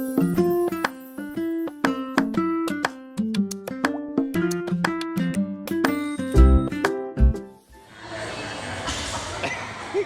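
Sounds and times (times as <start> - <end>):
upbeat plucked music: 0.0 - 7.6.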